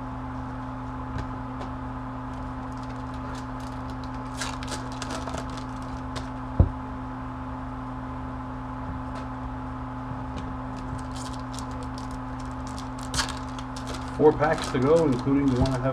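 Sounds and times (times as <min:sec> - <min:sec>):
steady low hum: 0:00.0 - 0:15.9
foil wrapper crinkling: 0:02.3 - 0:06.4, 0:10.7 - 0:15.9.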